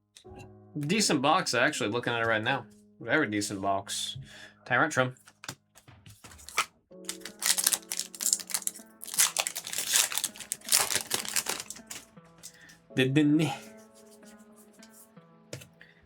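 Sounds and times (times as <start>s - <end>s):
quiet background music: 0.0s - 16.0s
foil wrapper crinkling: 6.2s - 12.6s.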